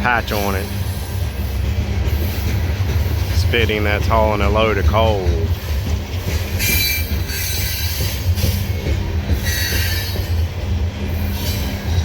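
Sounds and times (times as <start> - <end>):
train cars rumbling on rails: 0.0 - 12.0
high wheel squeal: 6.3 - 8.6, 9.4 - 10.4.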